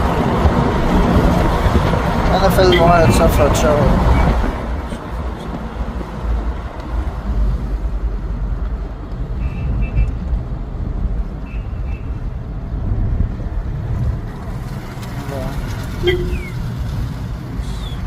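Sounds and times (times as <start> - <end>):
vehicle rumble: 0.0 - 18.0
high beeps: 16.0 - 16.5.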